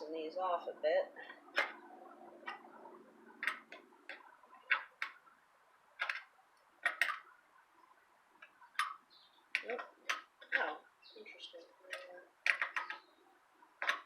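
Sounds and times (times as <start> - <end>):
metal clicks on bicycle spokes: 3.4 - 5.2, 6.0 - 7.3, 8.4 - 10.7, 11.9 - 13.0, 13.8 - 14.0.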